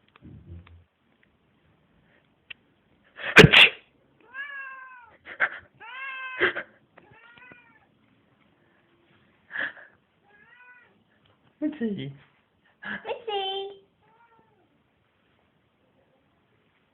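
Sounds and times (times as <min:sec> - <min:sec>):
person sneezing: 0:03.2 - 0:03.9
cat meowing: 0:04.2 - 0:05.2, 0:05.8 - 0:08.0, 0:10.2 - 0:11.0, 0:14.0 - 0:14.8.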